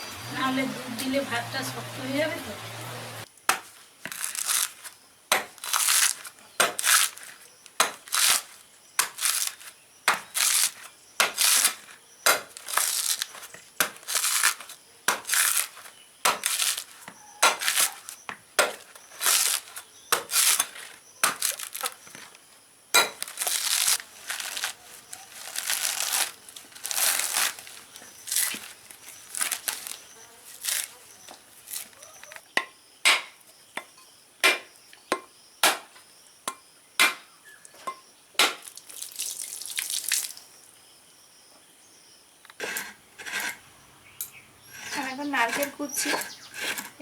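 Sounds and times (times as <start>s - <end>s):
rice squished by hand: 3.4s - 22.3s, 23.0s - 32.1s, 38.5s - 40.4s.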